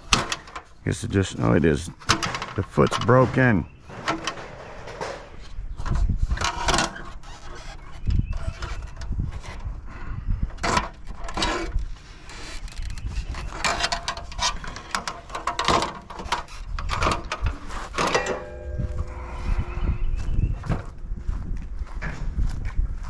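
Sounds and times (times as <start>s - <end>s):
scrap metal clanking and rattling: 2.0s - 7.8s, 13.4s - 20.4s.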